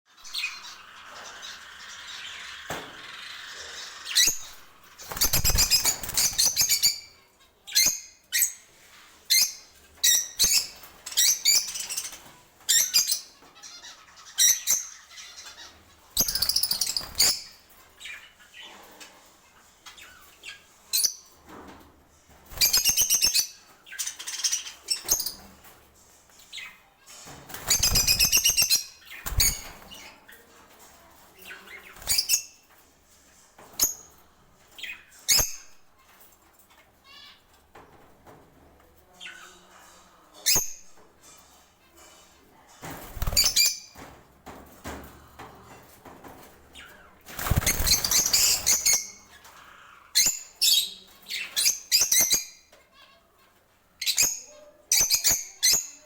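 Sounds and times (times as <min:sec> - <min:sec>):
birds chirping and squawking: 0:00.1 - 0:21.5, 0:22.4 - 0:25.8, 0:26.4 - 0:32.8, 0:42.8 - 0:44.1, 0:44.8 - 0:56.0
wings flapping: 0:01.0 - 0:06.9, 0:16.2 - 0:17.5, 0:27.3 - 0:30.1, 0:42.9 - 0:43.7, 0:47.2 - 0:49.0.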